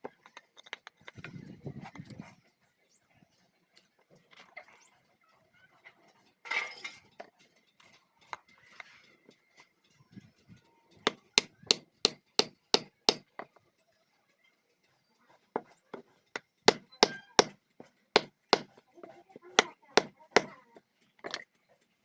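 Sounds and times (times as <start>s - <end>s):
sharp blows on wood: 16.7s - 17.6s, 18.2s - 18.8s.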